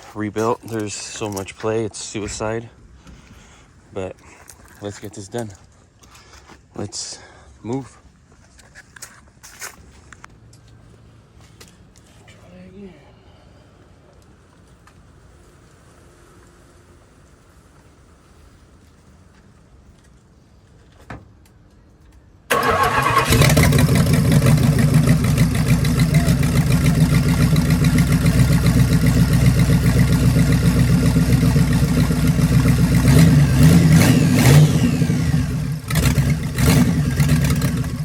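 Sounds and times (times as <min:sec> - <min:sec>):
car engine starting and running: 0:22.5 - 0:38.0
engine revving: 0:22.5 - 0:38.0.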